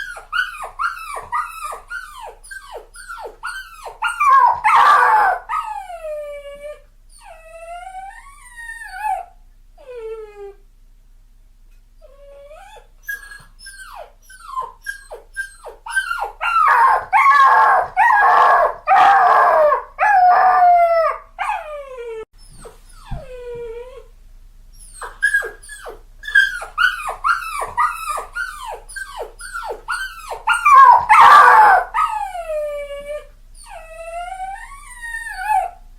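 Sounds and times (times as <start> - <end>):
puppy whimpering and whining: 0.0 - 10.6, 12.0 - 24.1, 24.7 - 35.8.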